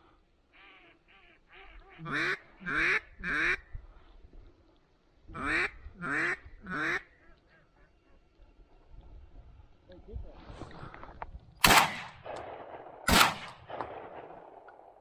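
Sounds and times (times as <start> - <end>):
duck call quacks: 0.5 - 3.6, 5.4 - 7.1.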